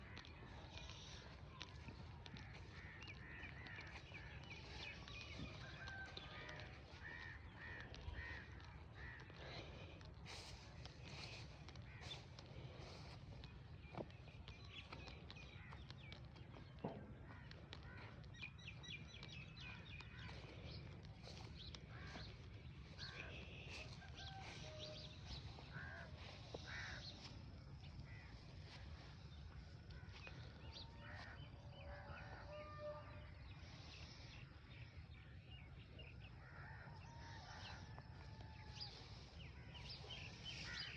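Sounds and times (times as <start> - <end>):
birds chirping: 0.0 - 36.8, 37.6 - 40.9.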